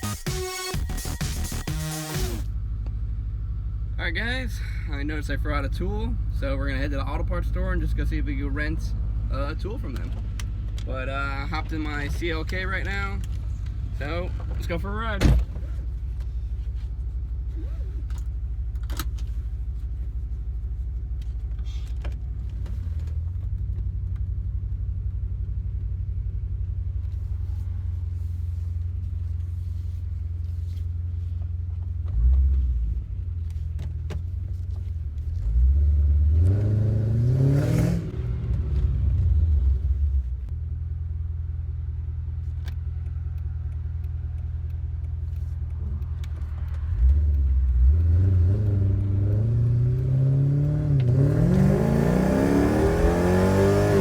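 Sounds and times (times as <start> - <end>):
car engine rumbling and revving: 0.0 - 54.0.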